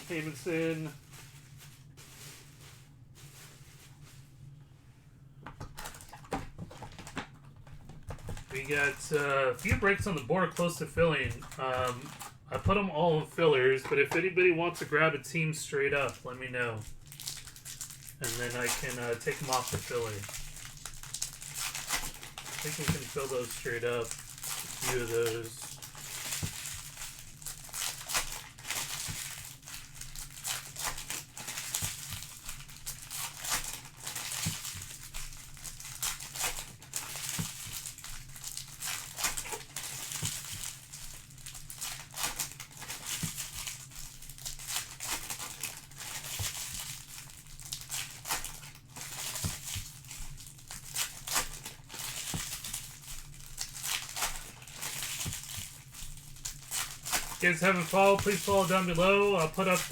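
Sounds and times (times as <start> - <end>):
card pack wrappers crinkling: 0.0 - 4.3, 5.6 - 14.9, 15.8 - 59.9
steady low hum: 7.8 - 17.0.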